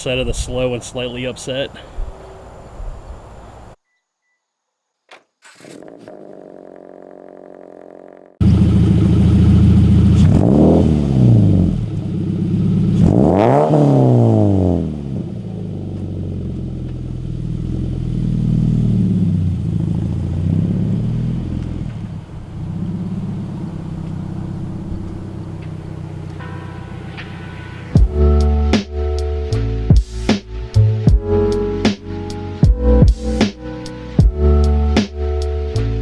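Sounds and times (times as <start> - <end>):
car engine revving: 8.4 - 28.4.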